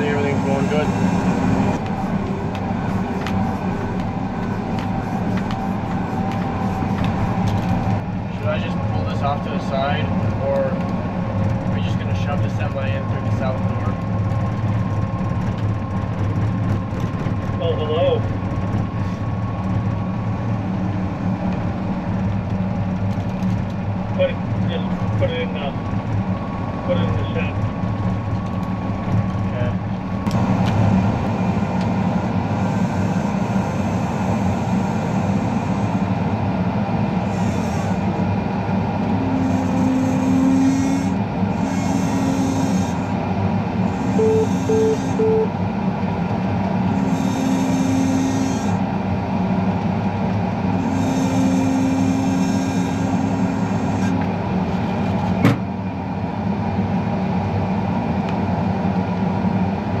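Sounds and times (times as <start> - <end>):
diesel engine running: 0.0 - 60.0
short beeps: 44.2 - 45.5.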